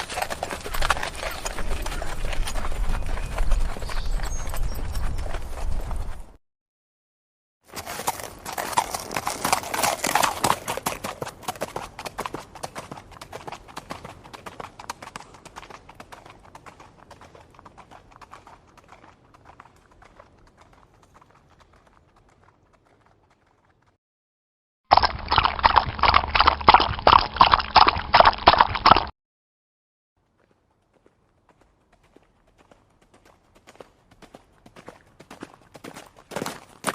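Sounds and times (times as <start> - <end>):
hoofbeats of running horse: 0.0 - 6.4, 7.7 - 24.0, 30.4 - 36.9.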